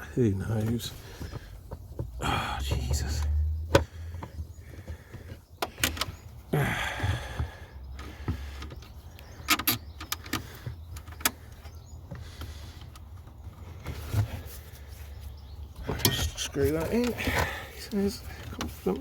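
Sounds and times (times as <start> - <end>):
tools clicking and knocking on metal: 0.6 - 13.4
scraping rustle: 12.2 - 19.0.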